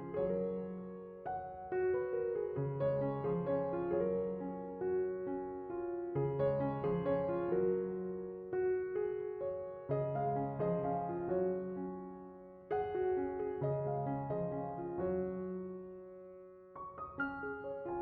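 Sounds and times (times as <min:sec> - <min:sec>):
gentle piano music: 0:00.0 - 0:18.0.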